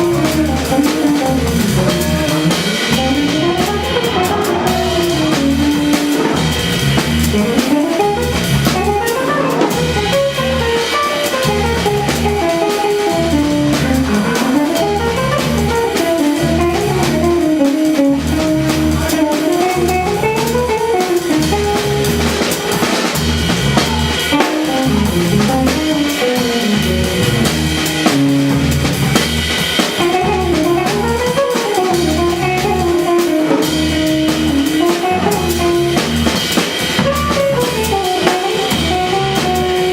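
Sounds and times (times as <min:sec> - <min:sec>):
steady bass pulse: 0:00.0 - 0:09.0, 0:24.8 - 0:31.3
drum kit: 0:00.0 - 0:39.9
jazz guitar line: 0:00.0 - 0:39.9.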